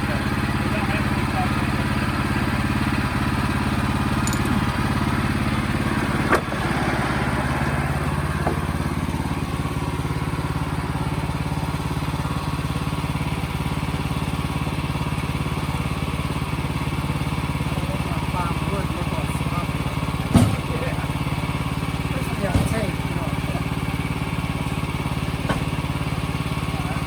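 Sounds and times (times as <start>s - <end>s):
sawmill engine running: 0.0s - 27.0s
sharp knock: 20.4s - 20.8s.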